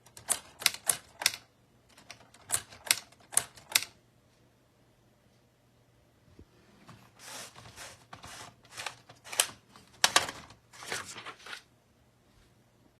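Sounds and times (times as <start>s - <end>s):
plastic typewriter clacking: 0.0s - 4.0s, 7.5s - 11.0s.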